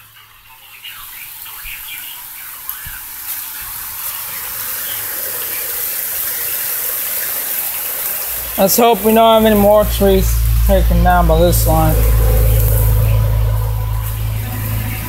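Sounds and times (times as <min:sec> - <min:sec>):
heavy rain: 0:00.0 - 0:15.0
wind: 0:00.0 - 0:15.0.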